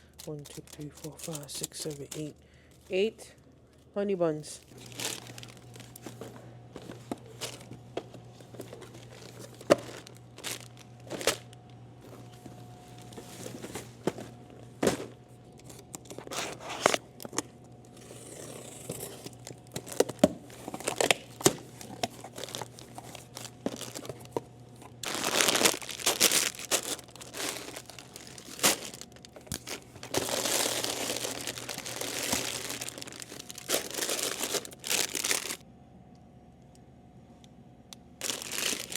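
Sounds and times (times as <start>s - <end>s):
plastic wrappers crinkling: 0.0s - 3.0s, 4.5s - 13.8s, 19.0s - 35.6s, 38.2s - 38.9s
steady low hum: 0.0s - 38.9s.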